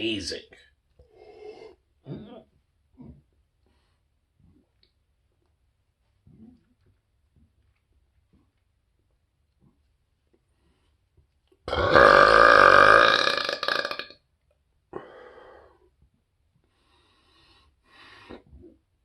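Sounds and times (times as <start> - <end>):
man burping loudly: 11.7 - 14.2.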